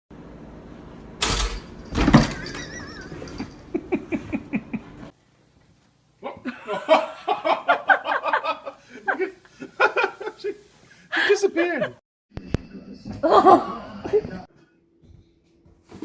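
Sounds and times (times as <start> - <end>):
people laughing: 2.5 - 5.1, 6.2 - 12.0, 13.2 - 14.5.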